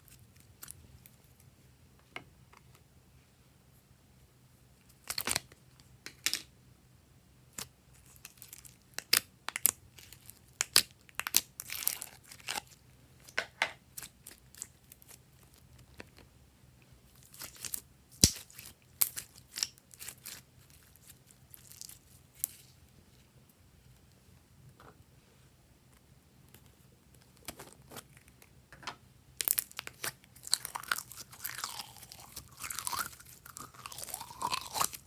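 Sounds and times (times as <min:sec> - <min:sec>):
sticky slime crackles and pops: 0:07.6 - 0:12.8, 0:17.2 - 0:22.6, 0:29.4 - 0:35.0.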